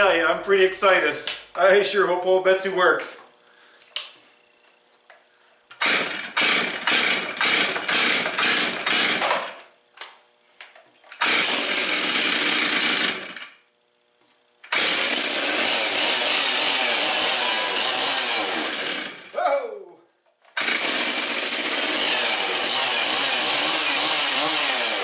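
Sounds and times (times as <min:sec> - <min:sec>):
chainsaw engine starting and running: 0:05.8 - 0:09.5, 0:11.2 - 0:13.6, 0:14.7 - 0:19.4, 0:20.6 - 0:25.0.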